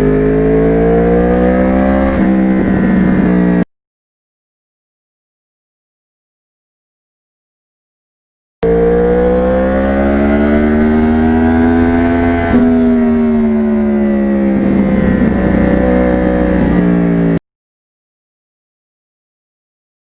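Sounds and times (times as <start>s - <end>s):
motorcycle engine at road speed: 0.0s - 3.7s, 8.6s - 17.4s.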